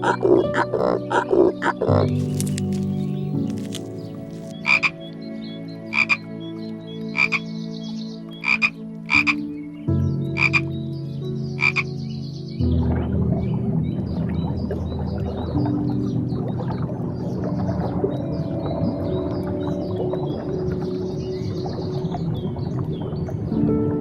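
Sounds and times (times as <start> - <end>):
short croaking calls: 0.0 - 2.8, 4.4 - 5.0, 5.9 - 6.2, 7.2 - 7.4, 8.4 - 9.4, 10.4 - 10.6, 11.6 - 11.9.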